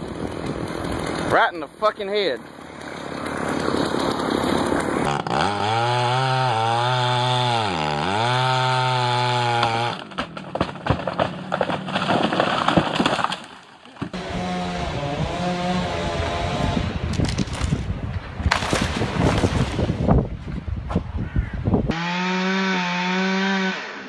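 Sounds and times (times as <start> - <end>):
chainsaw cutting: 3.1 - 13.1, 14.1 - 17.7, 21.9 - 24.0
wood cracking and knocking: 9.6 - 14.2, 17.1 - 19.9.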